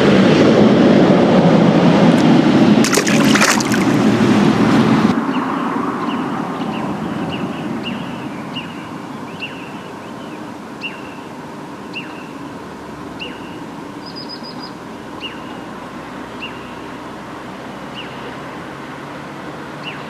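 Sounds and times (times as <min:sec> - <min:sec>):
small bird chirping: 0:13.2 - 0:15.6.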